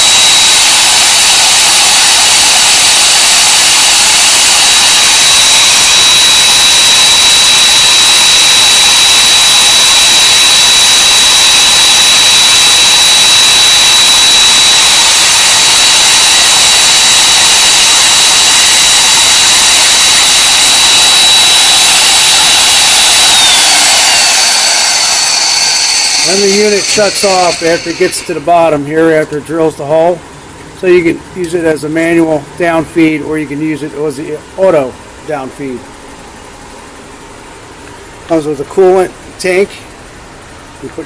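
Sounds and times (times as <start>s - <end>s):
drill press motor whining: 0.0s - 28.8s.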